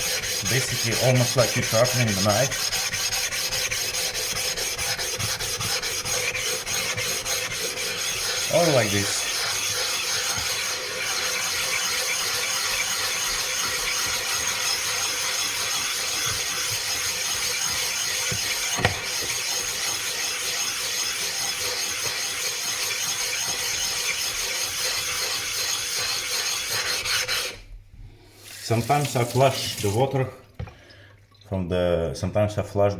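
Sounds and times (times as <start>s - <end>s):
stone scraping on whetstone: 0.0s - 27.6s.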